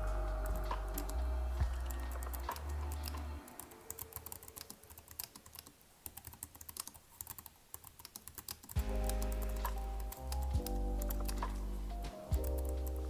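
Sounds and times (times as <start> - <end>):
lo-fi music with deep bass: 0.0 - 3.6, 8.8 - 13.0
keyboard typing: 0.0 - 13.0.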